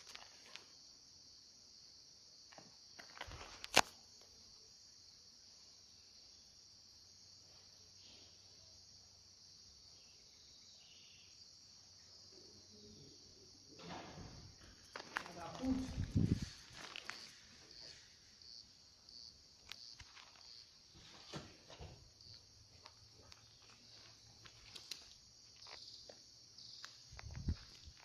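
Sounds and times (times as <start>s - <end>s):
insect chorus chirring: 0.0s - 28.0s
faint rustles: 13.9s - 18.4s.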